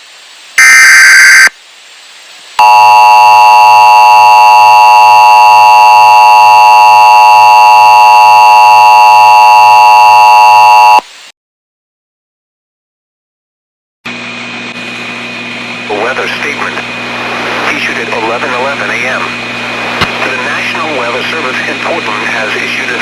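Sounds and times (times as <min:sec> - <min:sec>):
loud steady alert tone: 0:02.6 - 0:11.0.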